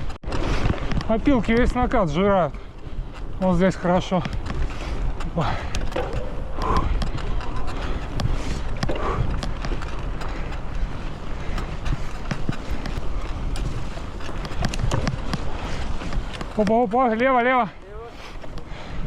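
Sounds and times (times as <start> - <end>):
bike clicks and rattles: 0.0 - 19.0
tyres rumbling on dirt trail: 0.0 - 19.0
wind on microphone: 4.1 - 16.6.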